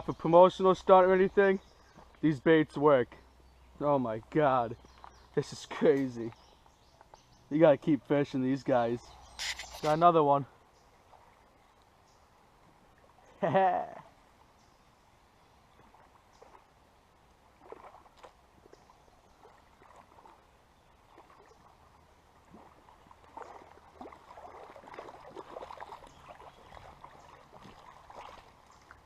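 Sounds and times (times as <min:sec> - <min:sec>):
water splashing and sloshing: 0:04.2 - 0:13.5, 0:15.5 - 0:29.0.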